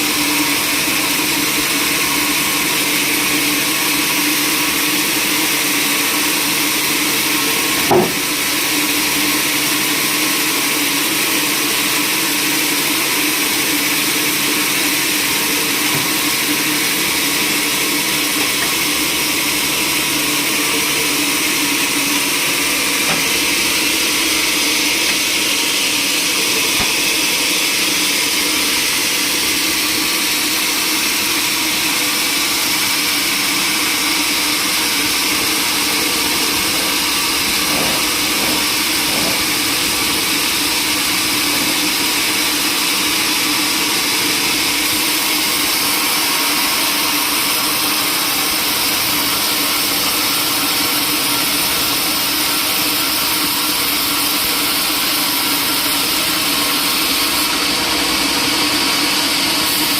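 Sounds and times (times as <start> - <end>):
saw hissing and whining: 0.0 - 59.9
machine drone: 15.2 - 59.9.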